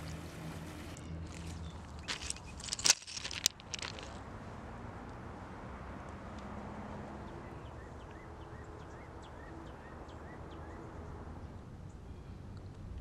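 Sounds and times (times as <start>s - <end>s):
low outdoor rumble: 0.0s - 4.2s.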